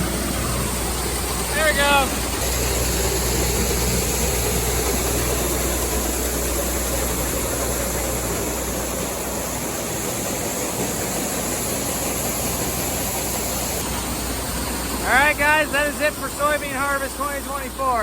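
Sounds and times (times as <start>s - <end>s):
low engine hum: 0.0s - 18.0s.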